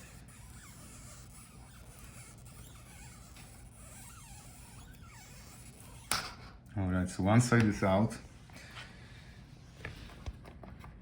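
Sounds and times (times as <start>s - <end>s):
squeaky creaks of adhesive strip: 0.0s - 6.6s.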